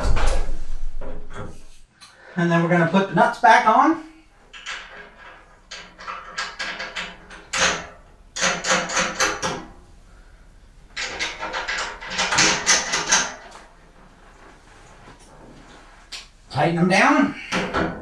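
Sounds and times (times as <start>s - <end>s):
metallic clicks and rattles: 4.4s - 9.8s, 10.9s - 14.1s.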